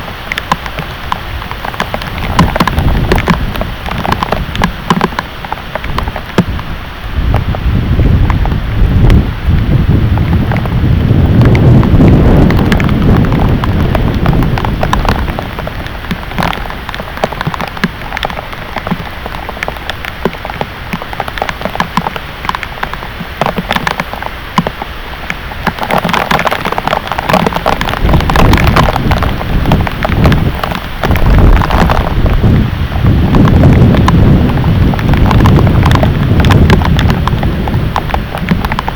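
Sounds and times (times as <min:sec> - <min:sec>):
heavy rain pelting a surface: 0:00.0 - 0:38.9
low thunder rumble: 0:05.9 - 0:19.0, 0:26.0 - 0:38.9.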